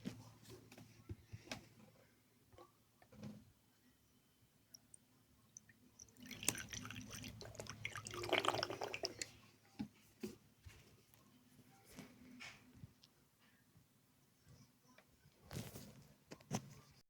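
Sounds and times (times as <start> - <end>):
liquid trickling into dish: 5.6 - 9.4.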